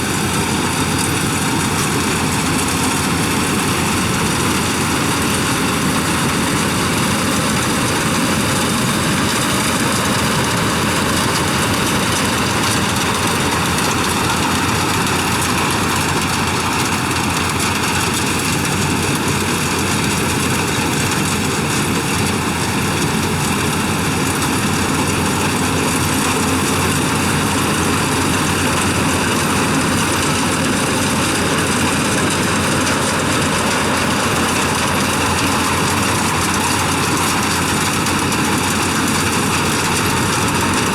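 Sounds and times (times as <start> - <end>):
combine harvester drone: 0.0 - 40.9.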